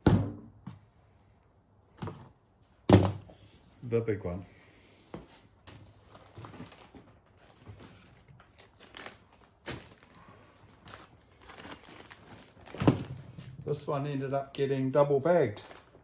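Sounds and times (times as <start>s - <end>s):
plastic film crinkling: 6.0s - 13.9s, 15.4s - 16.0s.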